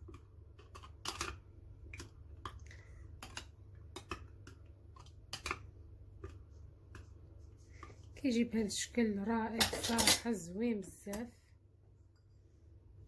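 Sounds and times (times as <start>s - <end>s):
kitchenware clicking and tapping: 9.6s - 10.4s.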